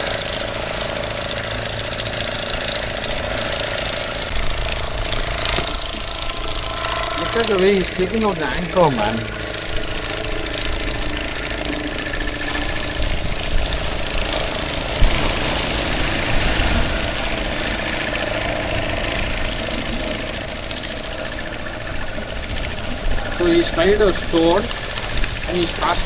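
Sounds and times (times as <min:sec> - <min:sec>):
boat engine idling: 0:00.0 - 0:26.0.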